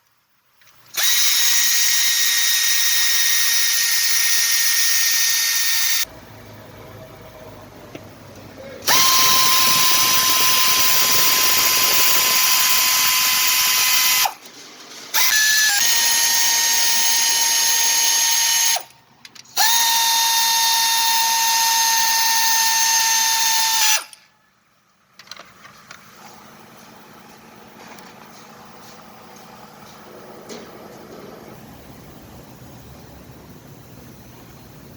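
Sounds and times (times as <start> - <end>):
handheld power tool whining: 0.7 - 6.1, 8.8 - 14.5, 15.1 - 24.3.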